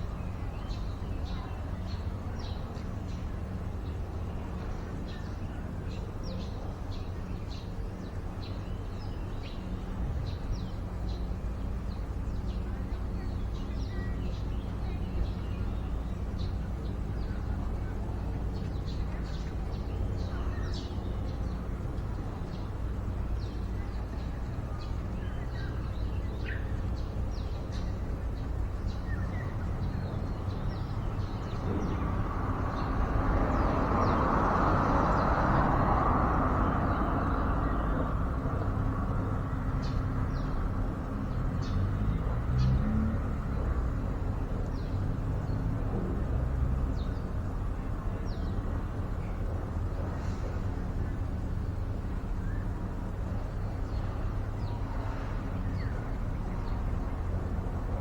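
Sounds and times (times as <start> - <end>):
small birds chirping: 0.0 - 35.8.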